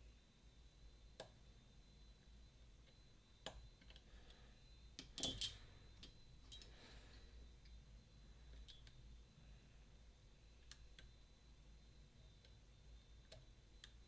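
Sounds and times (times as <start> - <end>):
lock pick clicking in lock: 5.0 - 5.6.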